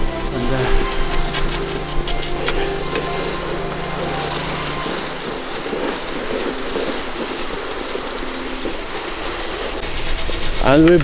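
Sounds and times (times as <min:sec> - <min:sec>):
low hum: 0:00.0 - 0:11.0
sled runners scraping snow: 0:00.0 - 0:11.0.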